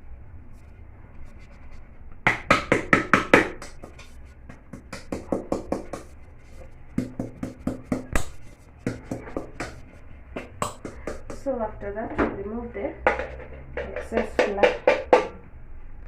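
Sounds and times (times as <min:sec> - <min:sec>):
pot knocking when tapped: 0:13.0 - 0:15.4.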